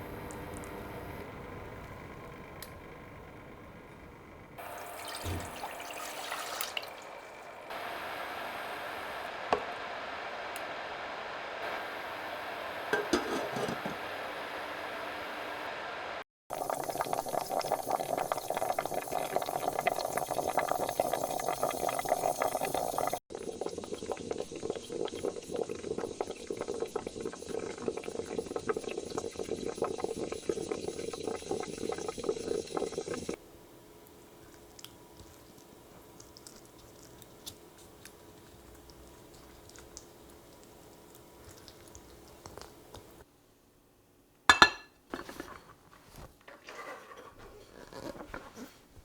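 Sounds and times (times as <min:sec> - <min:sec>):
water boiling in a pot: 0:04.6 - 0:43.3.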